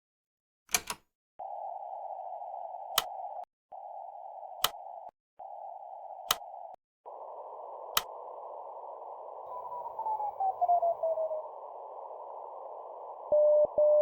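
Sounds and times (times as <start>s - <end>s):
sharp clicks: 0.7s - 1.0s, 2.9s - 3.2s, 4.5s - 5.1s, 6.2s - 6.6s, 7.9s - 8.2s.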